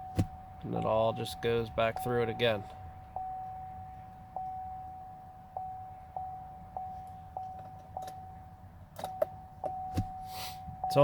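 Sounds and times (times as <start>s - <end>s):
dashboard warning chime: 0.0s - 11.0s.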